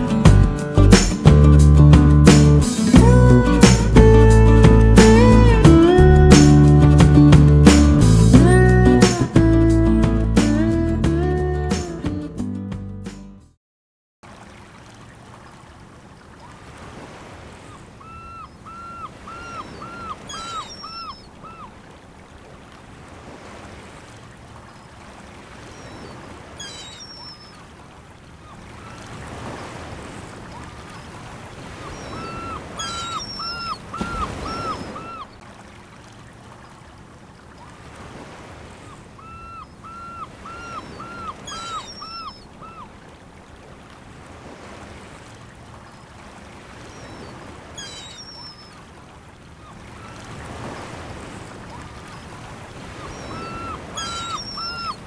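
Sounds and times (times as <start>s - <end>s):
waves washing against shore: 0.0s - 9.5s, 14.2s - 55.0s
animal call of short notes: 18.0s - 21.7s, 31.8s - 35.3s, 39.2s - 42.9s, 53.0s - 55.0s
high chirps: 18.1s - 21.7s, 25.8s - 27.5s, 31.8s - 35.3s, 39.2s - 42.5s, 53.0s - 55.0s.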